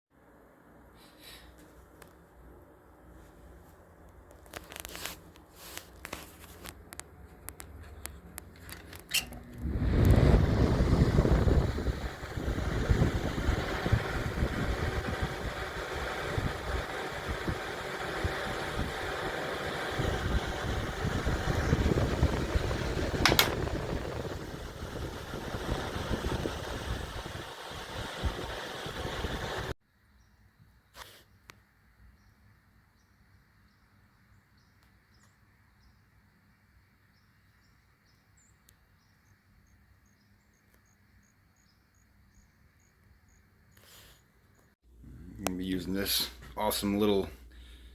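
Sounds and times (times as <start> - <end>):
box fan running: 0.3 - 29.8
light clicks and crinkling: 4.0 - 9.4
sharp click: 23.2 - 23.7.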